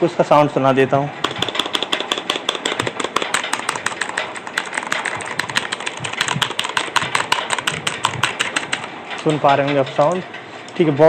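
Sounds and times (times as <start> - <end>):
mechanical keyboard keys clacking: 1.2 - 8.9.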